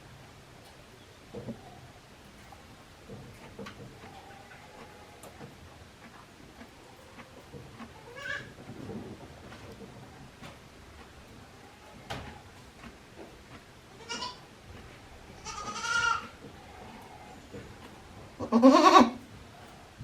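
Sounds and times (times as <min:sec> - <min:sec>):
goats bleating: 0:08.0 - 0:08.5, 0:13.9 - 0:14.4, 0:15.3 - 0:17.5, 0:18.4 - 0:19.2.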